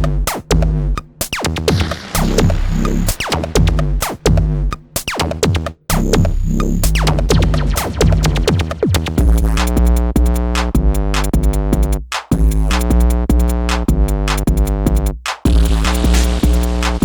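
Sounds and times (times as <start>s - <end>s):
electronic dance music: 1.3s - 4.3s, 6.9s - 9.7s, 15.5s - 17.0s.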